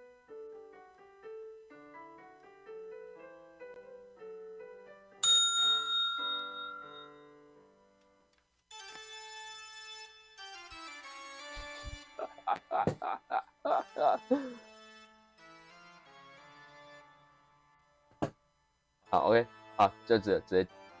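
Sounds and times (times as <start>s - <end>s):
light keyboard music: 0.0s - 14.8s, 19.1s - 21.0s
electronic bell ding: 5.2s - 7.4s.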